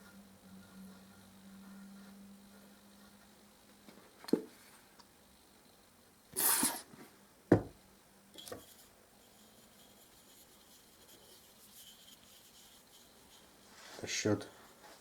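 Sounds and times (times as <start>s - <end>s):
wooden dowel scraping: 8.4s - 15.0s.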